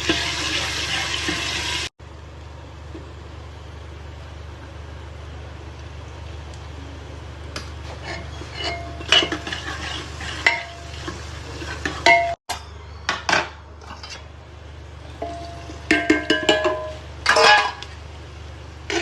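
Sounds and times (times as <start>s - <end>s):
low steady hum: 2.0s - 19.0s
metal spoon scraping a pot: 8.0s - 12.4s.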